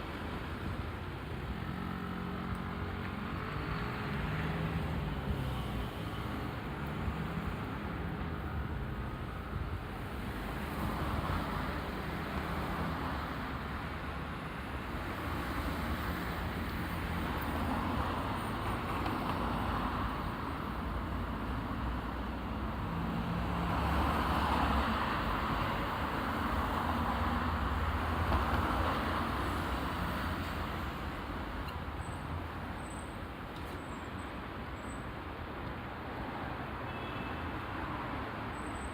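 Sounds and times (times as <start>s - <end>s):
cars passing: 10.0s - 31.6s.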